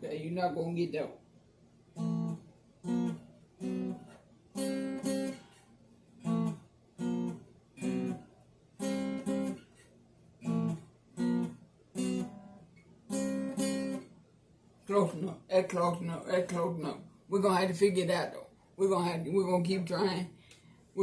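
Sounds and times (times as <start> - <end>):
acoustic guitar strummed chords: 1.9 - 14.2.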